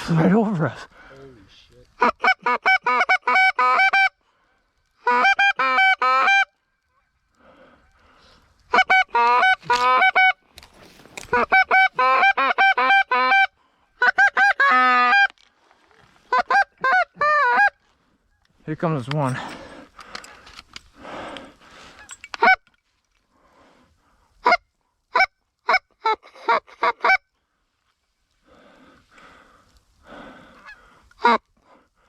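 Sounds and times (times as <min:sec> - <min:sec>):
goose call honks and clucks: 0:02.0 - 0:04.2, 0:05.0 - 0:07.2, 0:08.7 - 0:10.4, 0:11.2 - 0:15.4, 0:16.2 - 0:17.8, 0:21.9 - 0:22.8, 0:24.4 - 0:27.3, 0:30.6 - 0:31.5.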